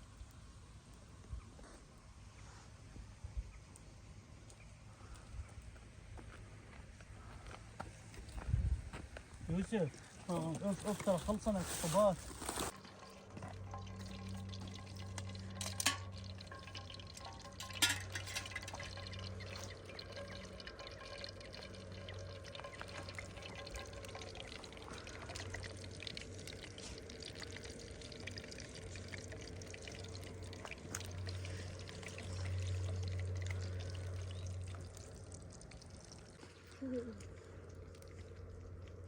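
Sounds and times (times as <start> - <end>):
water running: 10.3 - 36.4
low hum: 12.6 - 39.0.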